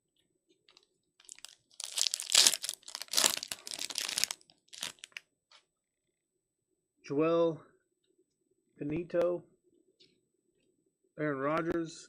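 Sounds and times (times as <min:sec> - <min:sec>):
card pack wrapper crinkling: 0:01.2 - 0:05.2.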